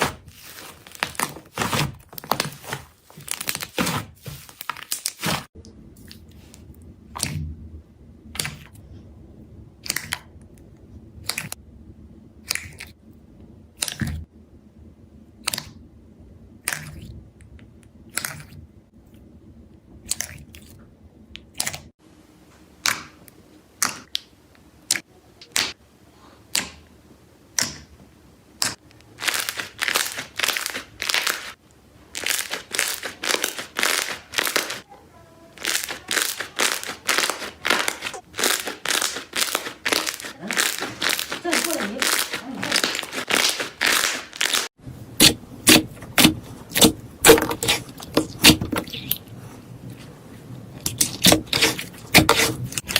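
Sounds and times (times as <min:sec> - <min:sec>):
slime crackling and crunching: 0:00.0 - 0:06.5, 0:29.0 - 0:34.9, 0:35.5 - 0:49.2, 0:50.8 - 0:52.9.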